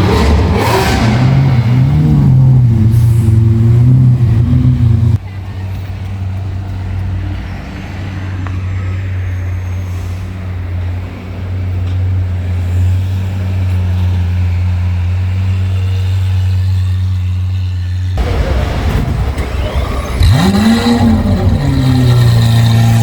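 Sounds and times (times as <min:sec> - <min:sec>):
car engine idling: 0:00.0 - 0:07.2.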